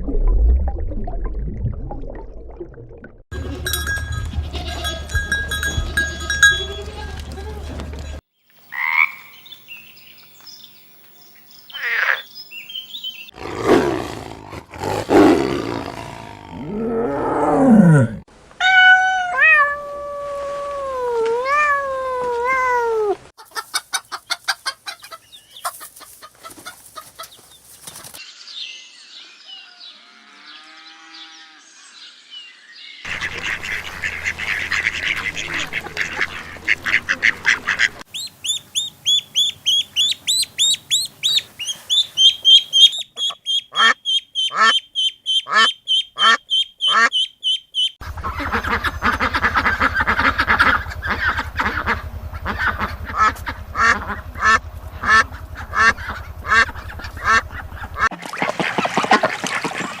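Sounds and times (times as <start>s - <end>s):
ducks quacking: 33.1s - 60.0s
high peeping calls: 37.8s - 58.1s.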